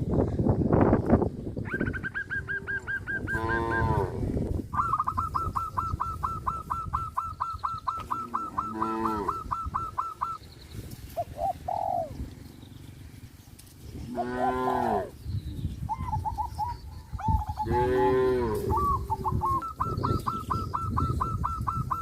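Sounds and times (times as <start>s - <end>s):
cows mooing: 2.7s - 4.3s, 8.2s - 9.5s, 14.1s - 15.1s, 17.6s - 18.7s
bird chirping rapidly: 4.7s - 13.0s, 18.8s - 22.0s.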